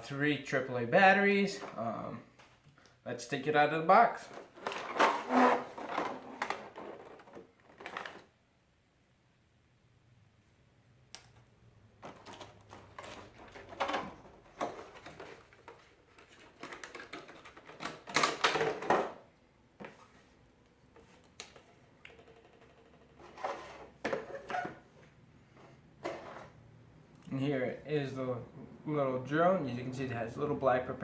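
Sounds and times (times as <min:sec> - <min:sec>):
packaging rustling and clatter: 0:04.3 - 0:08.3, 0:12.0 - 0:19.2.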